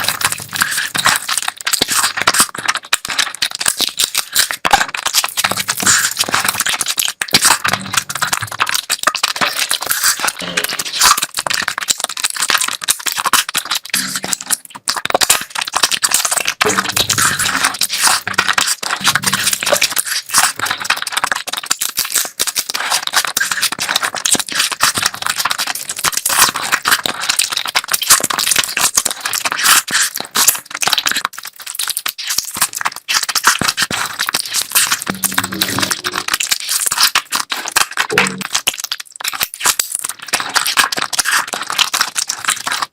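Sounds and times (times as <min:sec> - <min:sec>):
chewing and crunching food: 0:00.0 - 0:42.9
wet mouth clicks and smacks: 0:28.0 - 0:42.8.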